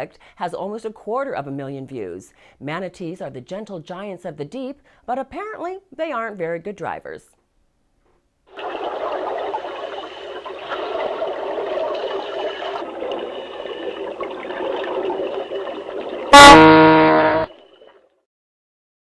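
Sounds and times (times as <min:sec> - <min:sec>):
cartoon car horn honk: 0:16.3 - 0:17.5.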